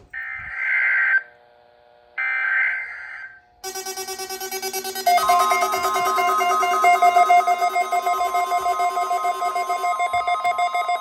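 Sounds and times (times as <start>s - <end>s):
screechy warbling data bursts: 4.8s - 11.0s
light plucked background music: 5.0s - 11.0s.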